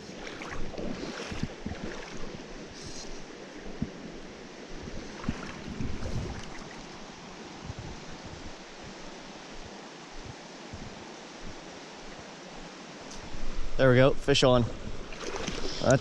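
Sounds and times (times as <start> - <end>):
wind buffeting microphone: 0.0 - 3.0, 3.7 - 11.6
mountain stream flowing: 0.0 - 16.0.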